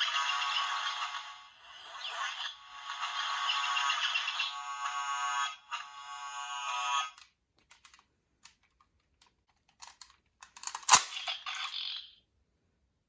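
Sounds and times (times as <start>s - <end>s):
toy electronic tune: 0.0s - 7.2s
light clicks of toy handled: 7.2s - 11.7s.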